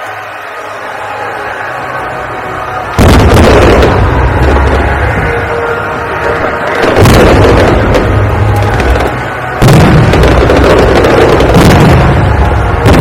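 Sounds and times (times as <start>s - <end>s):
fireworks booms: 3.0s - 5.5s, 6.2s - 13.0s.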